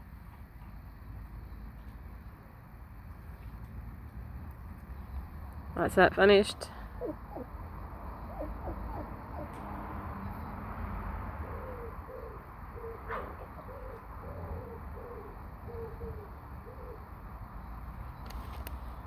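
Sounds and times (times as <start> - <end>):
bird calling low notes: 6.8 - 9.6.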